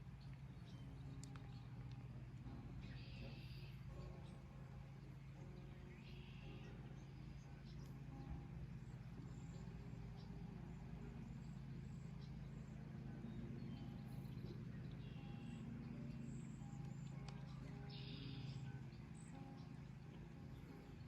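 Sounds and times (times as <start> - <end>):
steady low hum: 0.0 - 21.0
high bird chirps: 13.7 - 19.7.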